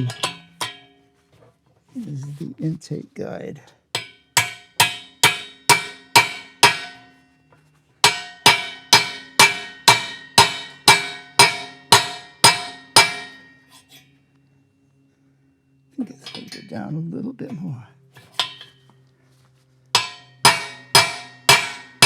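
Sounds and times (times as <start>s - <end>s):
hammer blows on metal driver: 0.0s - 0.9s, 8.0s - 13.5s, 20.0s - 22.0s.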